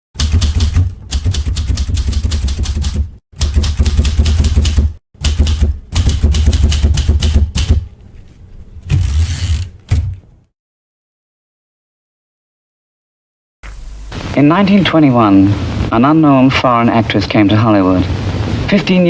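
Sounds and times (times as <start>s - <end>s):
rapid mechanical clattering: 0.2s - 10.5s.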